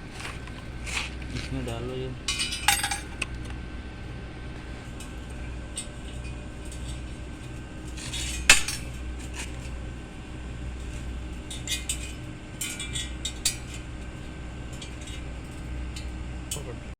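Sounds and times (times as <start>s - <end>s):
steady low hum: 0.0s - 16.9s
metal pieces clinking: 2.3s - 3.2s.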